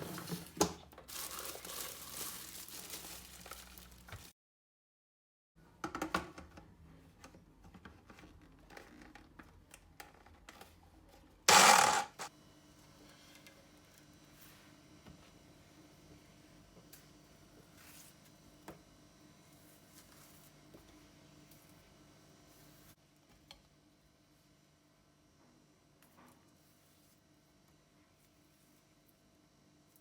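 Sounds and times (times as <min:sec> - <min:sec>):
rustling and crinkling: 0:00.0 - 0:04.4
loud noisy burst: 0:11.5 - 0:12.3.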